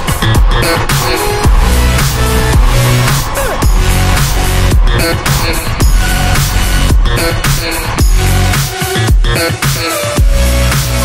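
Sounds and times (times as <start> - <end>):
deep bass sweeping down: 0.0 - 9.6
electronic dance music: 0.0 - 11.0.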